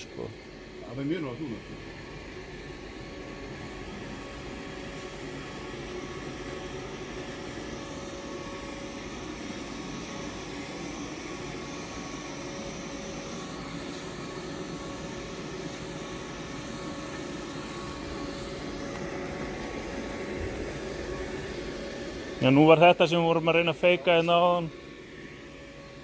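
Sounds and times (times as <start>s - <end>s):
robot vacuum motor whirring: 4.0s - 22.7s.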